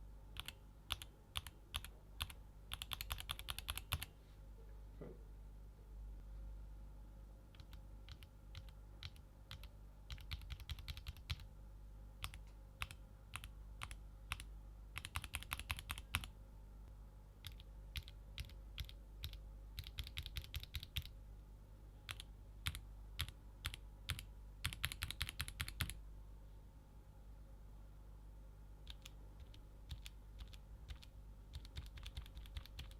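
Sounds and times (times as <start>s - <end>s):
mechanical keyboard typing: 0.4s - 4.1s, 7.6s - 11.5s, 12.2s - 16.3s, 17.4s - 21.1s, 22.1s - 26.0s, 28.9s - 32.9s.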